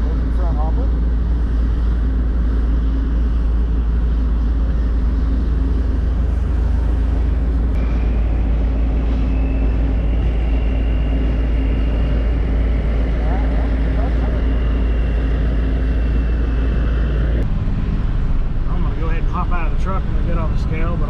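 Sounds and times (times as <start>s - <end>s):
faint high whine: 0.0s - 21.0s
truck engine low drone: 0.0s - 21.0s.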